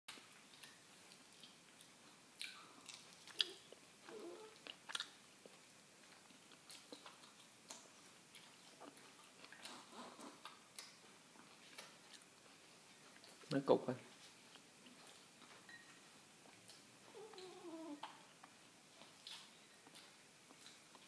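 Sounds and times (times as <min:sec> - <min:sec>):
baby hiccupping: 0:17.1 - 0:18.1.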